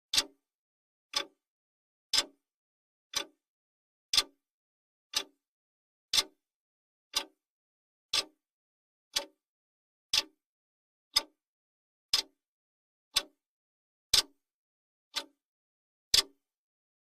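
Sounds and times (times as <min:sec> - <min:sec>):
clock ticking: 0:01.1 - 0:01.3, 0:02.1 - 0:02.4, 0:03.1 - 0:03.4, 0:05.1 - 0:05.4, 0:06.1 - 0:06.4, 0:07.1 - 0:07.3, 0:08.1 - 0:08.3, 0:12.1 - 0:12.3.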